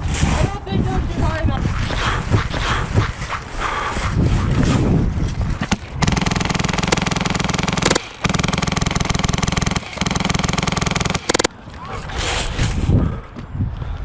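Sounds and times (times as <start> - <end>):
airsoft machine gun bursts: 6.0 - 11.5.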